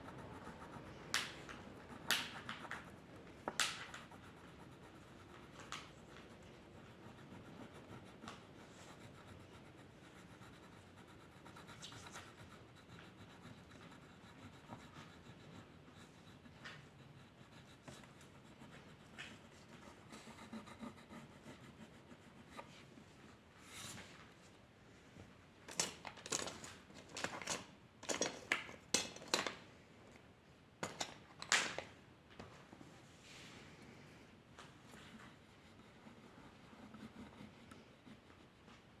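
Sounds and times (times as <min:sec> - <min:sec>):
drawing tool scratching on paper: 0:06.4 - 0:22.8, 0:35.0 - 0:38.6.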